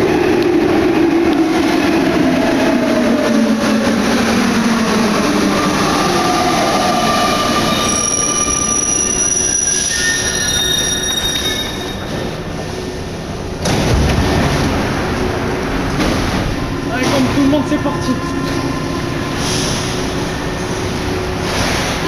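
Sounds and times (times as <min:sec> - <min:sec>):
train traction motor whine: 0:00.1 - 0:22.0
high-pitched whistling tones: 0:05.8 - 0:12.1.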